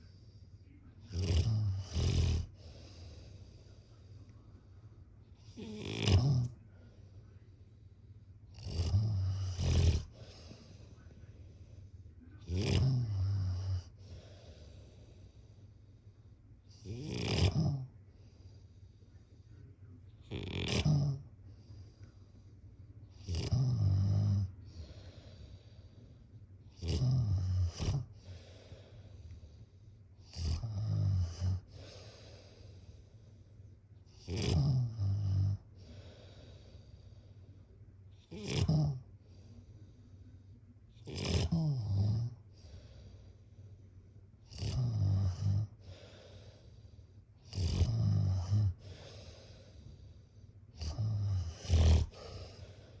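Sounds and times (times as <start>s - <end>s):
soft hissing breaths: 0.0s - 53.0s
loud low snores: 1.1s - 2.9s, 5.4s - 6.6s, 8.5s - 10.6s, 12.4s - 14.6s, 16.7s - 17.9s, 20.2s - 21.2s, 23.2s - 25.4s, 26.7s - 28.8s, 30.2s - 32.7s, 34.1s - 36.7s, 38.2s - 39.1s, 41.0s - 43.0s, 44.4s - 46.5s, 47.4s - 49.8s, 50.7s - 53.0s
soft breaths out: 24.6s - 26.4s, 28.0s - 30.2s, 31.5s - 33.8s, 35.7s - 37.9s, 42.4s - 44.2s, 45.7s - 47.4s, 48.7s - 50.8s, 52.0s - 53.0s.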